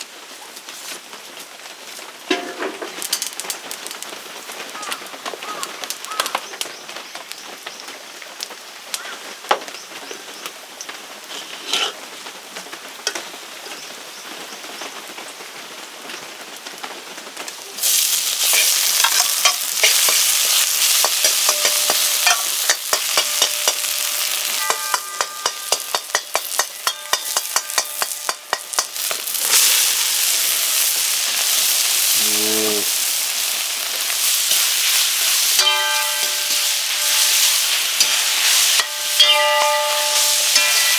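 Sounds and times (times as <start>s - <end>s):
food sizzling in a pan: 1.6s - 8.6s, 11.0s - 12.3s, 17.3s - 40.9s
spatula scraping a pan: 11.3s - 12.0s, 17.9s - 30.0s, 34.3s - 40.9s.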